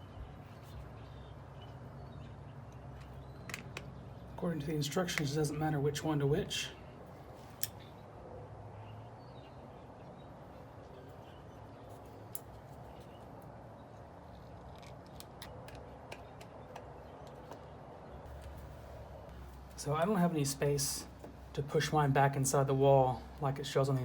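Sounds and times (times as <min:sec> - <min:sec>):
low background hiss: 0:18.4 - 0:24.0.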